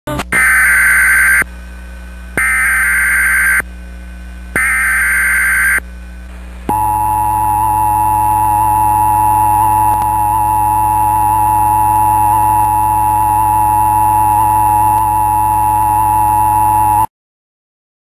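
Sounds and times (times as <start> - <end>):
buzzy data bursts: 2.4 - 3.6, 4.6 - 5.8.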